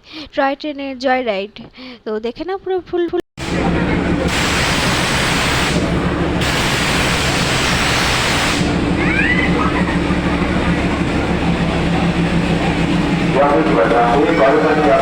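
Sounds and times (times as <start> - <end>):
steam locomotive hissing steam: 3.4 - 9.0.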